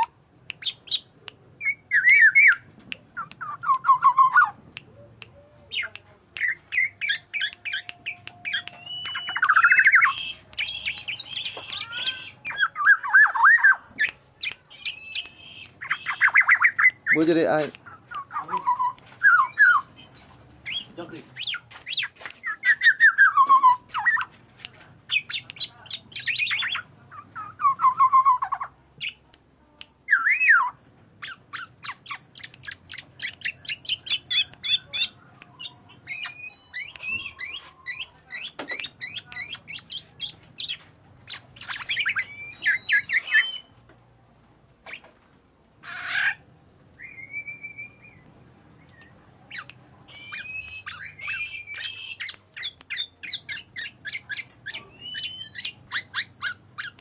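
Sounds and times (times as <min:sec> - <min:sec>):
oriole singing and calling: 0:00.0 - 0:44.0, 0:44.8 - 0:45.2, 0:45.8 - 0:57.0
bird harsh squawk: 0:45.8 - 0:46.4.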